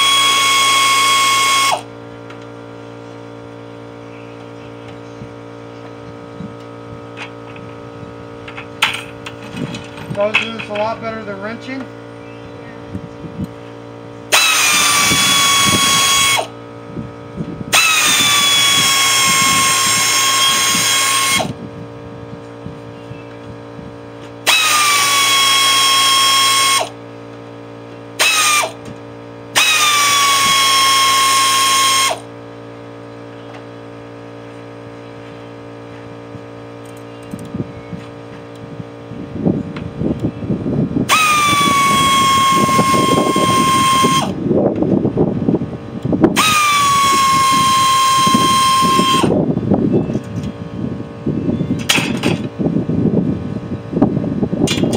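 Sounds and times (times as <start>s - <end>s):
power tool motor whining: 0.0s - 2.7s, 13.4s - 32.4s, 39.8s - 45.0s, 46.0s - 50.6s
metal parts clattering: 8.5s - 11.0s.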